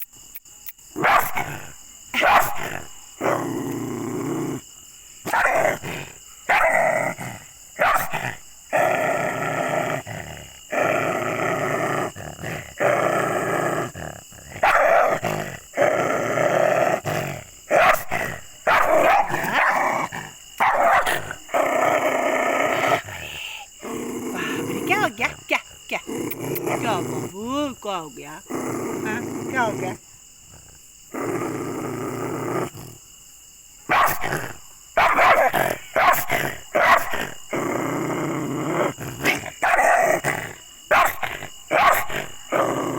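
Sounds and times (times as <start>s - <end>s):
dog barking: 1.0s - 3.4s, 5.2s - 7.2s, 7.8s - 8.4s, 14.6s - 22.0s, 33.9s - 37.4s, 38.7s - 40.3s, 40.9s - 42.7s
dog growling: 1.0s - 33.1s, 33.9s - 42.9s.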